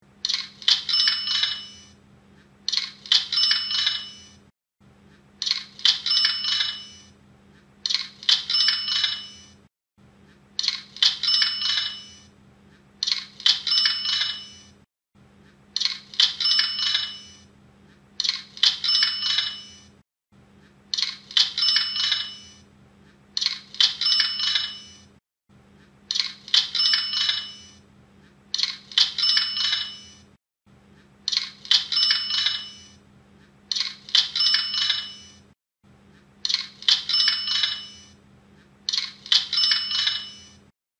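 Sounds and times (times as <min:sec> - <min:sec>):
cash register cha-ching: 0:00.3 - 0:02.0, 0:02.7 - 0:04.5, 0:05.5 - 0:07.2, 0:07.9 - 0:09.6, 0:10.7 - 0:12.3, 0:13.1 - 0:14.8, 0:15.9 - 0:17.5, 0:18.2 - 0:20.0, 0:21.1 - 0:22.6, 0:23.4 - 0:25.2, 0:26.3 - 0:27.8, 0:28.6 - 0:30.3, 0:31.4 - 0:33.0, 0:33.8 - 0:35.5, 0:36.6 - 0:38.2, 0:38.9 - 0:40.7.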